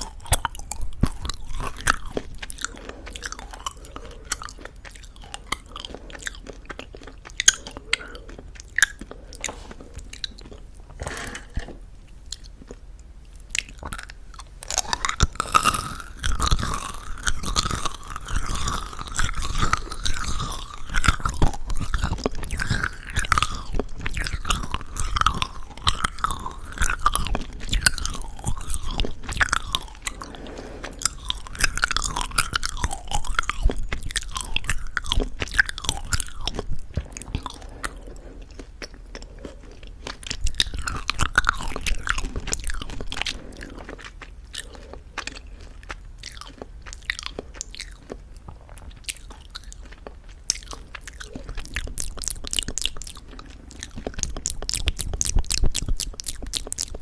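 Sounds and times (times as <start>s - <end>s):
wet mouth clicks: 0.0s - 11.7s, 12.3s - 57.0s
chewing crunchy candy: 0.0s - 57.0s.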